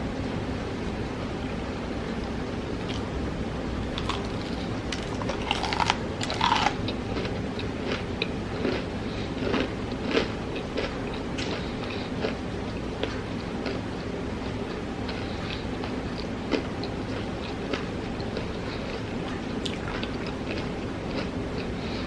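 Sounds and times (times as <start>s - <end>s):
crunching fried food: 2.2s - 3.2s, 3.8s - 22.0s
chewing clicks: 3.9s - 12.4s.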